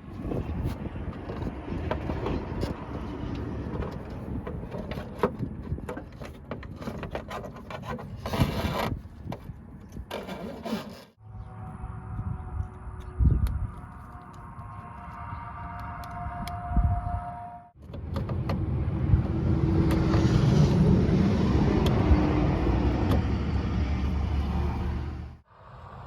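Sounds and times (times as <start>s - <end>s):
rubbing and scraping: 0.0s - 11.2s, 17.7s - 25.4s.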